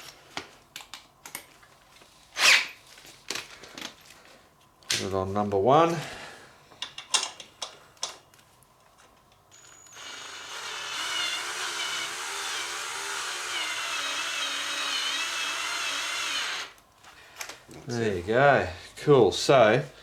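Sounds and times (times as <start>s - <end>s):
drill whining: 9.5s - 16.8s.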